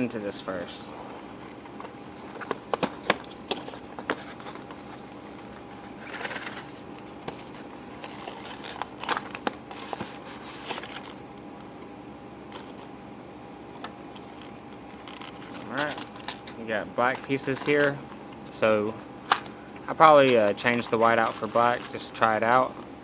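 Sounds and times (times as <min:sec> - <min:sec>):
packaging rustle: 0:00.5 - 0:11.2, 0:14.1 - 0:18.4, 0:20.0 - 0:22.7.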